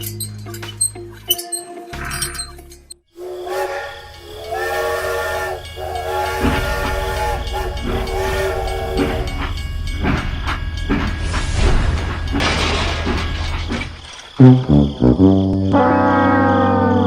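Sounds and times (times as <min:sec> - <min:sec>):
horn or whistle blasts: 0:03.1 - 0:09.7, 0:14.4 - 0:17.0.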